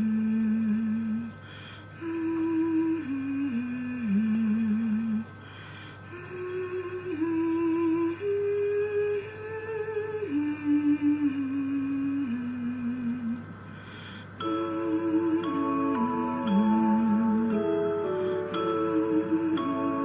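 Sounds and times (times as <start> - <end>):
slow pure-tone melody: 14.4 - 20.0.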